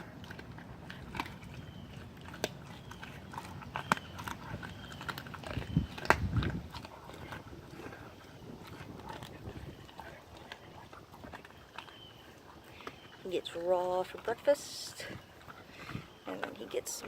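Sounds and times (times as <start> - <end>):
puppy chewing meat and bone: 0.0 - 17.0.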